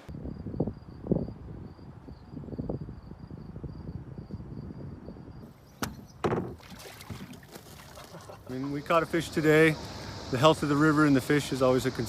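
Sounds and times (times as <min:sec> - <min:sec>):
low wind rumble: 0:00.0 - 0:12.0
insect chirping trill: 0:00.1 - 0:12.0
sharp knocks: 0:05.8 - 0:06.6.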